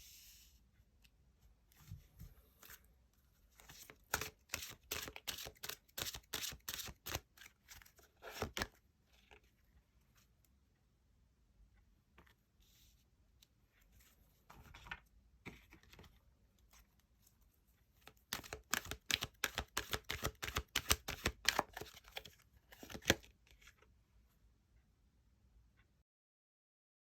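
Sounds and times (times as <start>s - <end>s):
cards rustling: 3.6s - 8.8s, 18.0s - 23.8s
cards clicking: 4.1s - 7.2s, 18.3s - 23.3s.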